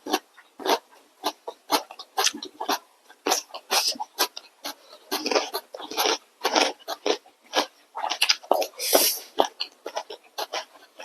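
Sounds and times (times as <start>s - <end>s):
people slurping noodles: 8.2s - 9.4s.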